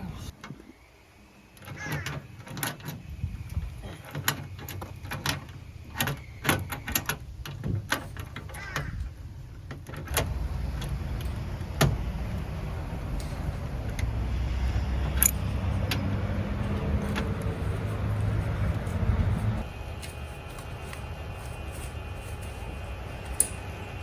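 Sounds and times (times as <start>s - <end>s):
steady low rumble: 9.0s - 24.0s.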